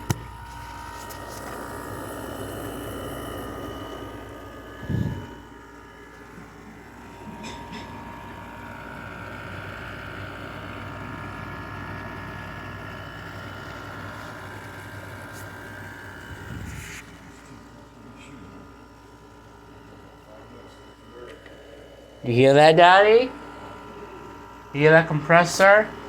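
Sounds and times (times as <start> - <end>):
high whine: 0.0 - 11.0, 13.7 - 18.8
air conditioner humming: 0.0 - 26.0.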